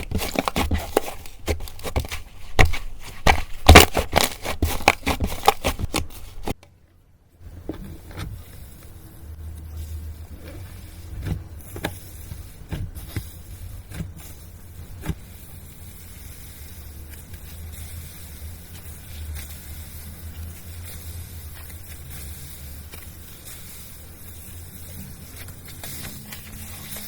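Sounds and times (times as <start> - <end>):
slime handling sounds: 0.0 - 6.6.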